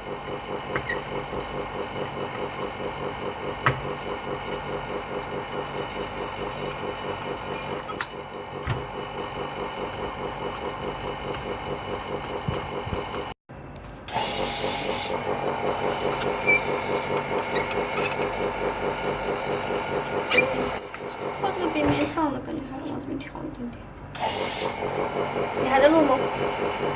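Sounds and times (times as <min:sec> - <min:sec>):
small machine motor pulsing: 0:00.0 - 0:13.4, 0:14.2 - 0:22.9, 0:24.1 - 0:26.9
sharp squeak: 0:07.6 - 0:08.2, 0:16.4 - 0:16.7, 0:20.3 - 0:21.3.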